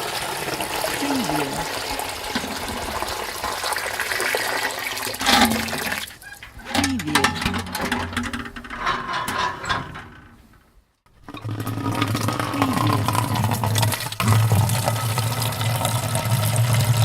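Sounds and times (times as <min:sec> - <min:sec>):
water pouring into container: 0:00.0 - 0:06.3, 0:11.2 - 0:17.0
water gurgling: 0:00.0 - 0:07.4, 0:11.2 - 0:17.0.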